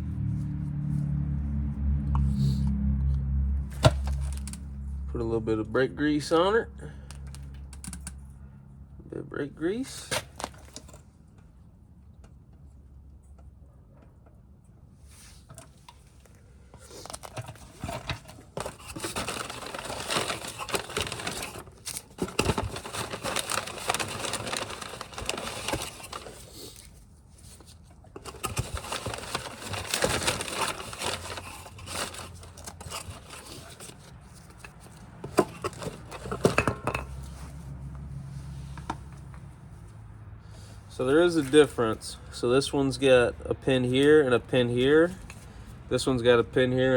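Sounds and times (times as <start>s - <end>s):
packaging crinkling and tearing: 3.7s - 4.6s, 10.1s - 11.0s, 16.8s - 36.6s.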